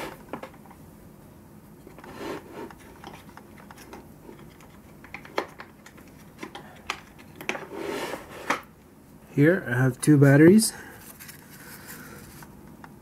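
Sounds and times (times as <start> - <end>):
hands rubbing plastic objects: 1.8 - 8.6.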